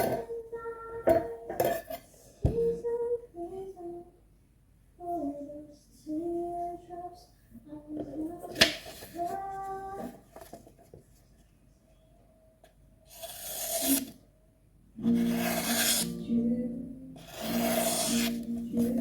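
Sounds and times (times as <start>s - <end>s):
knife scraping on whetstone: 13.1s - 14.2s, 15.1s - 16.2s, 17.2s - 18.5s
person humming: 15.0s - 19.0s.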